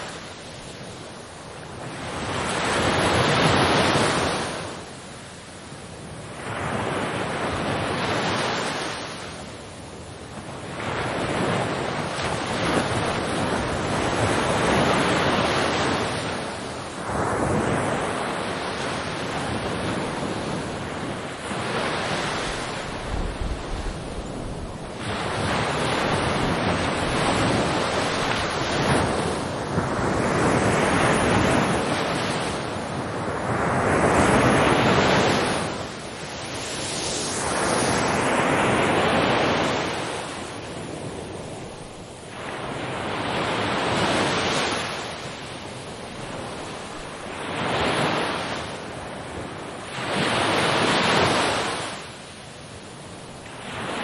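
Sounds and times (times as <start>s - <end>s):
ocean waves breaking: 10.5s - 52.1s.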